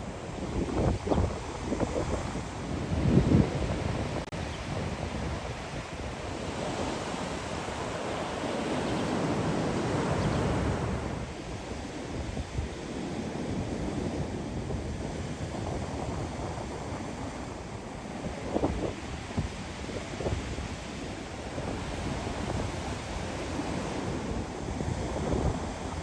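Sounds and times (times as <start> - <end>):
wind buffeting microphone: 0.0 - 26.0
ocean surf breaking: 5.4 - 11.3.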